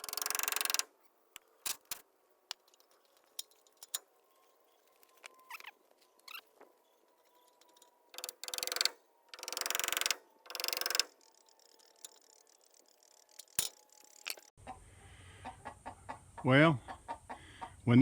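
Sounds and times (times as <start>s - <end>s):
mechanical ratcheting clicks: 0.0s - 0.9s, 7.6s - 14.5s.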